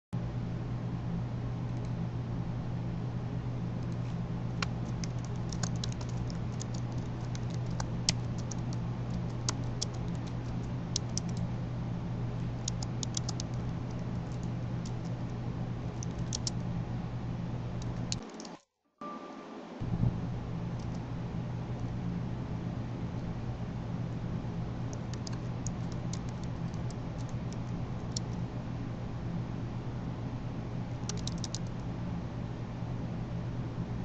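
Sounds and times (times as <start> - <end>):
low hum: 0.2 - 34.0
keyboard key clicks: 31.0 - 31.7.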